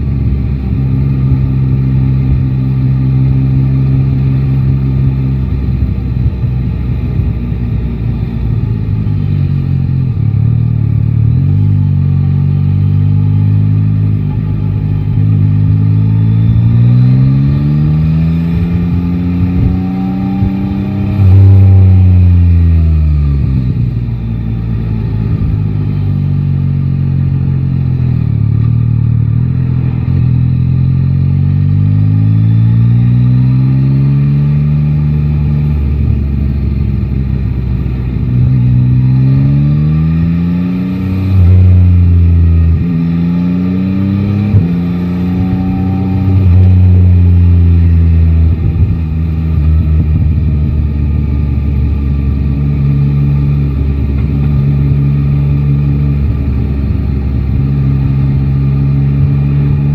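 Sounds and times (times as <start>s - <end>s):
motorcycle engine accelerating: 0.0s - 59.9s
wind noise: 42.3s - 55.2s.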